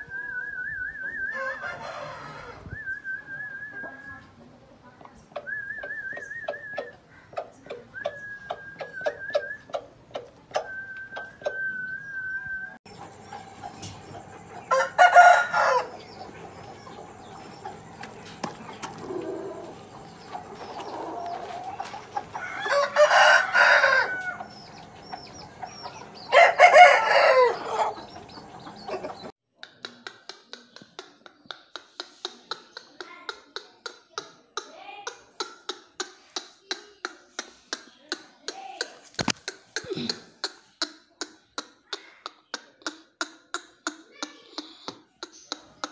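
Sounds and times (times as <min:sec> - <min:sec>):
rooster crowing: 0:01.2 - 0:02.6, 0:14.7 - 0:16.0, 0:22.4 - 0:24.5, 0:26.3 - 0:28.0
sharp ticks: 0:29.6 - 0:45.9.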